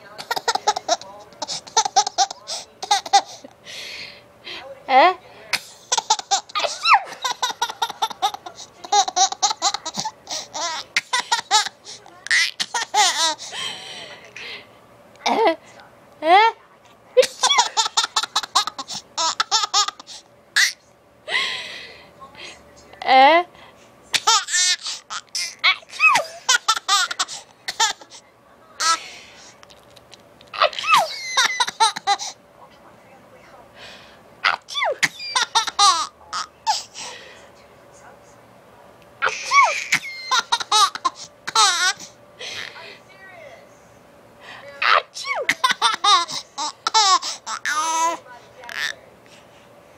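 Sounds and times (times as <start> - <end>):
high-pitched laughter and squeals: 6.5 - 7.8, 30.6 - 31.9, 34.5 - 35.8, 39.2 - 40.7
young child laughing: 25.6 - 28.0, 30.6 - 32.2, 39.2 - 42.0.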